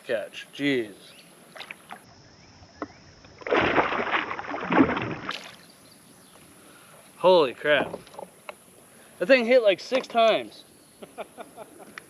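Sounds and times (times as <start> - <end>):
water splashing and churning: 1.4 - 2.1, 3.4 - 5.7.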